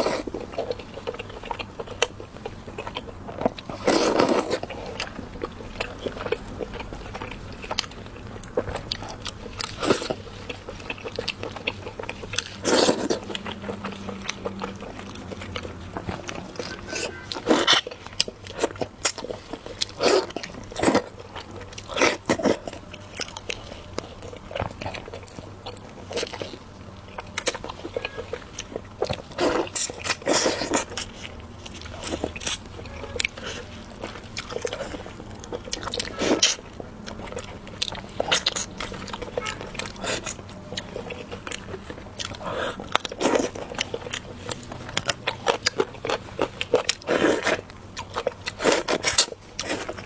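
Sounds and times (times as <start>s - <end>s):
person biting and chewing food: 0.0s - 50.0s.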